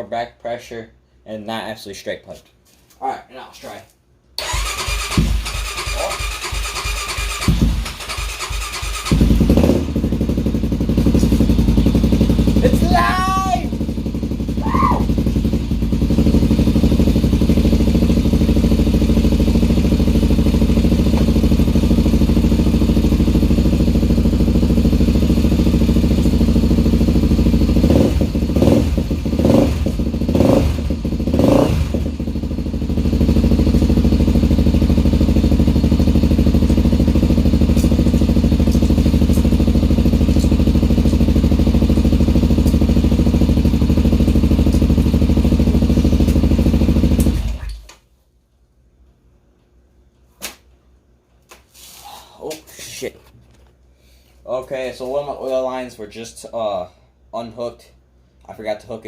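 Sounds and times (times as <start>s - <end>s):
motorcycle engine idling and revving: 4.4s - 47.9s.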